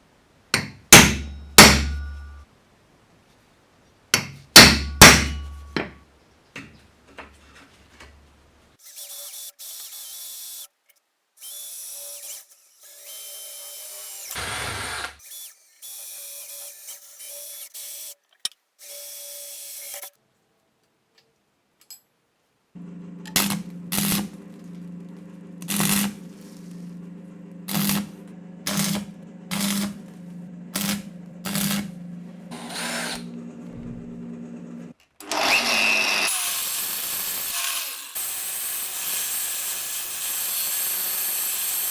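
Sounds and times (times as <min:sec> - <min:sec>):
power tools running in bursts: 0:14.3 - 0:15.2.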